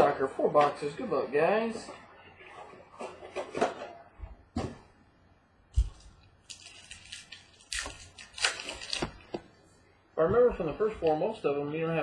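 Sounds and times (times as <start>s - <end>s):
card packs rustling: 5.8s - 9.5s.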